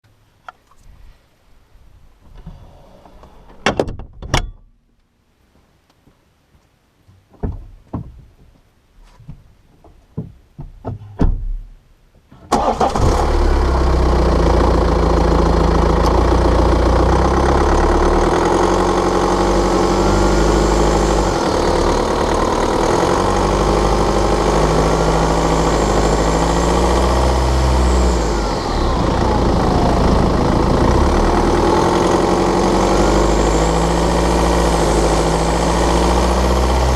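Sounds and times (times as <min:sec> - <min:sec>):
diesel engine starting and running: 0:12.5 - 0:36.9.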